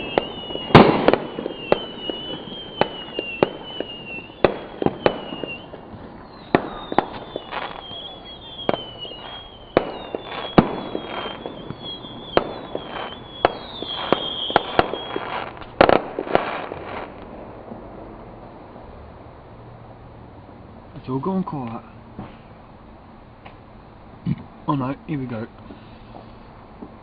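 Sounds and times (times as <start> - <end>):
falling firework whistles: 0.0 - 17.3
fireworks bangs and cracks: 0.0 - 18.9.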